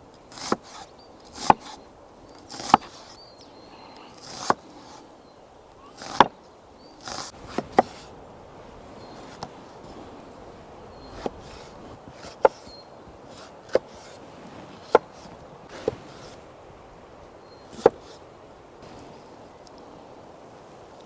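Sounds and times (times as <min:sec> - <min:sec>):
blade chopping wood: 0:00.3 - 0:01.8, 0:02.4 - 0:03.2, 0:04.2 - 0:05.0, 0:06.0 - 0:06.4, 0:07.0 - 0:08.1, 0:11.2 - 0:12.7, 0:13.3 - 0:16.4, 0:17.8 - 0:18.2.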